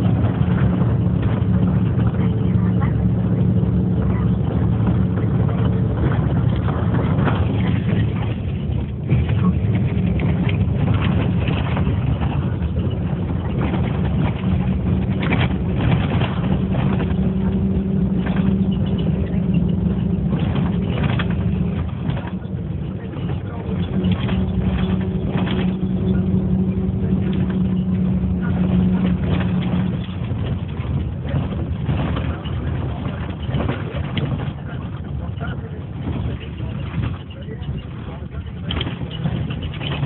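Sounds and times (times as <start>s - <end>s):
vehicle engine rumbling: 0.0s - 40.0s.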